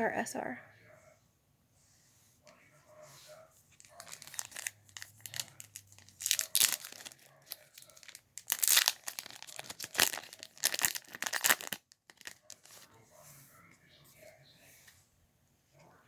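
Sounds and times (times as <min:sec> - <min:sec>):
wrapper tearing and crinkling: 0:04.0 - 0:12.8.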